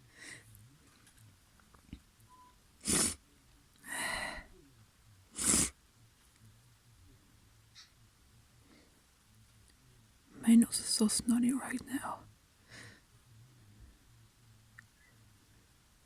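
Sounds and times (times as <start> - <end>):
person sneezing: 2.8 - 3.2, 5.4 - 5.7.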